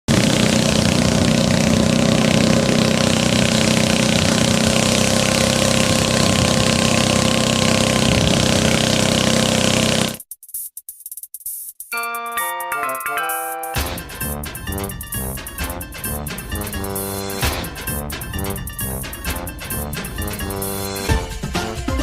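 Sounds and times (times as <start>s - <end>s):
engine running steadily: 0.1s - 10.2s, 14.0s - 21.1s.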